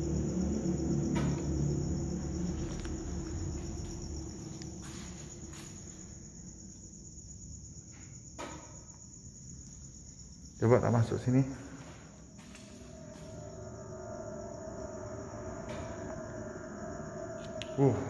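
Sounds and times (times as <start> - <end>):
low rumble: 0.0 - 6.1, 12.1 - 18.0
crickets chirring: 0.0 - 18.0.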